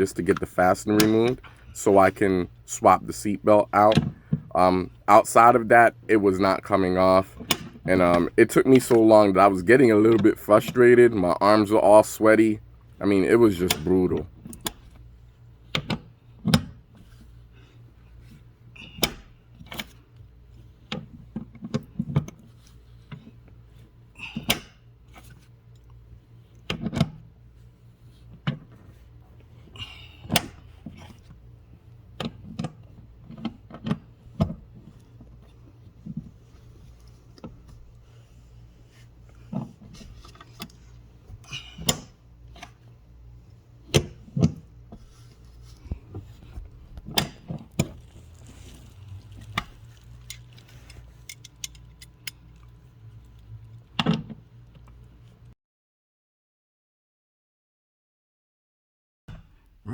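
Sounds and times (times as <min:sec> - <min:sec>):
metal tool clicks and knocks: 0:50.3 - 0:52.4.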